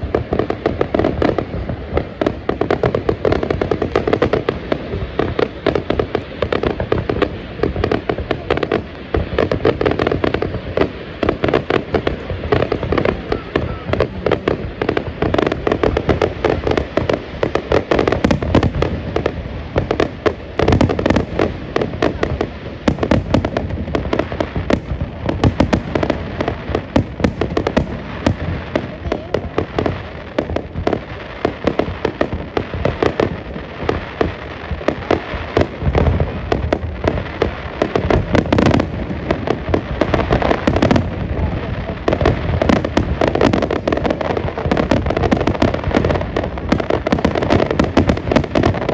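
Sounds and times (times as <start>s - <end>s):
fireworks bangs and crackling: 0.0s - 48.9s.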